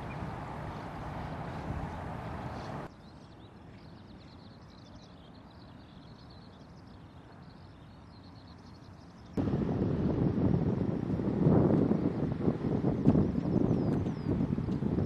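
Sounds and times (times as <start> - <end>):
faint low wind or river noise: 0.0 - 15.0
wind noise burst: 9.4 - 15.0.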